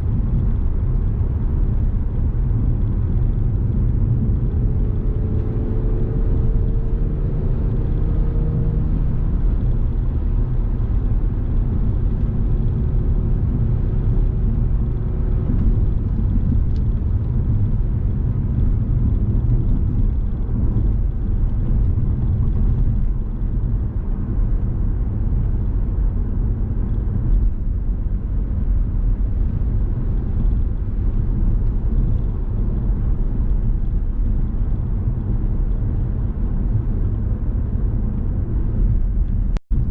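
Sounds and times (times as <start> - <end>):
car road and engine rumble: 0.0 - 39.9.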